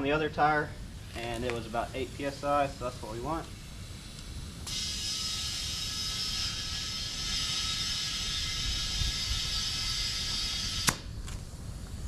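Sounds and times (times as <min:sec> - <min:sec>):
compressed air hissing into tire: 0:00.0 - 0:12.0.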